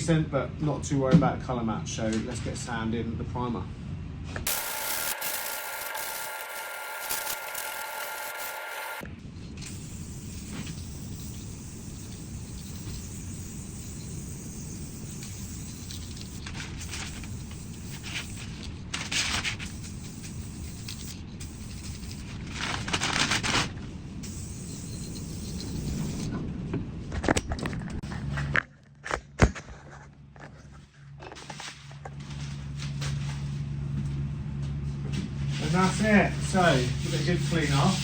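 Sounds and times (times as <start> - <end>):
sandpaper scraping: 4.5 - 9.0, 9.7 - 26.2, 35.6 - 38.0.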